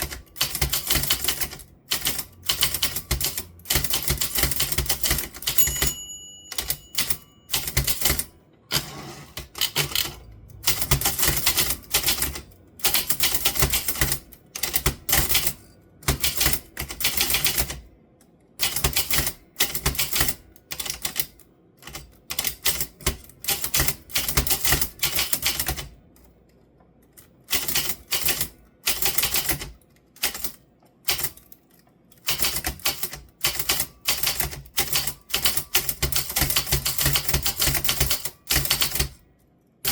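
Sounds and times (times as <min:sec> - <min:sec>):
typewriter bell ring: 0:00.0 - 0:08.3
typewriter keys clacking: 0:00.0 - 0:08.3, 0:09.4 - 0:17.8, 0:18.6 - 0:25.9, 0:27.5 - 0:31.6, 0:32.2 - 0:39.2.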